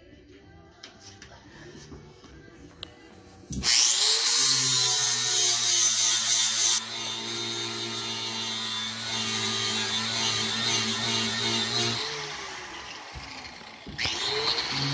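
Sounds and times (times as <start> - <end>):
grinder grinding metal: 3.5 - 14.9
grinder motor humming: 6.8 - 14.9.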